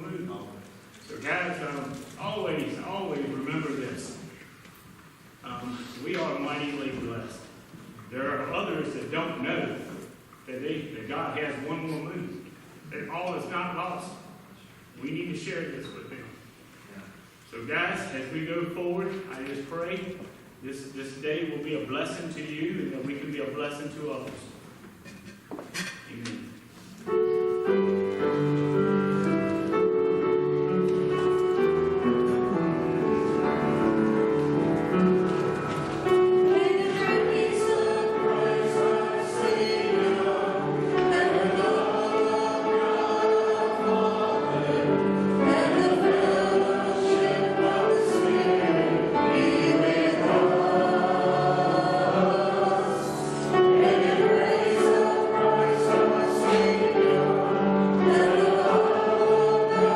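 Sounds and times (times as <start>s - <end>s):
choir singing a hymn: 27.1s - 59.9s.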